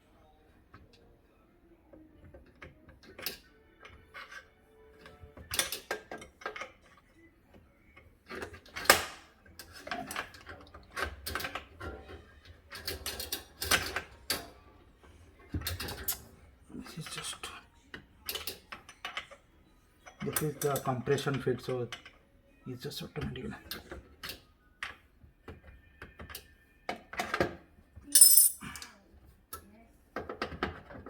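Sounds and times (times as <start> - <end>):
metallic clicks and clanks of tools: 12.7 - 14.5, 28.1 - 28.9.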